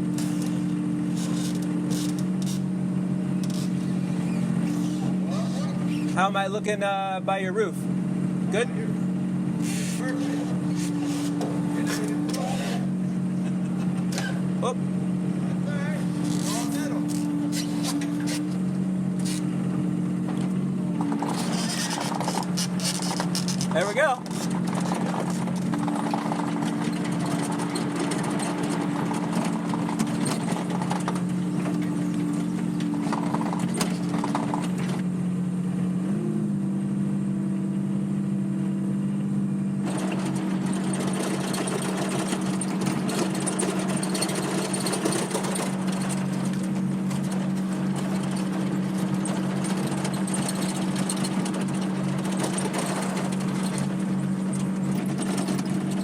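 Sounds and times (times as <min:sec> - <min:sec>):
skid steer loader engine running: 0:00.0 - 0:56.0
clattering rattle: 0:21.0 - 0:35.0, 0:39.9 - 0:56.0.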